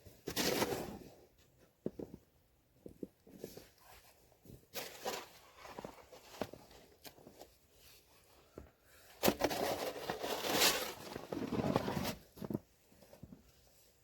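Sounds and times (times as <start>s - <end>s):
faint snow crunches: 2.8s - 14.0s
snow shovel scraping snow: 9.4s - 12.6s.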